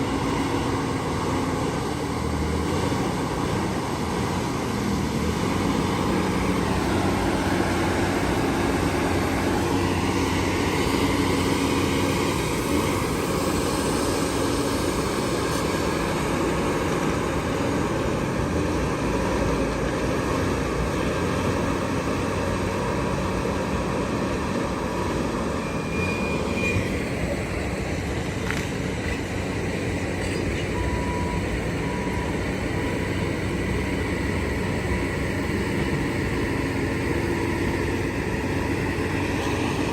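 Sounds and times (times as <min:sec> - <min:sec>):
heavy diesel machines running: 0:00.0 - 0:39.9.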